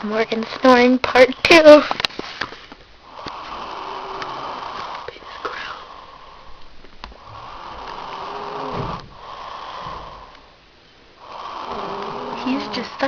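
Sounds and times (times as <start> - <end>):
man snoring: 3.0 - 6.5, 7.2 - 10.5, 11.2 - 13.0.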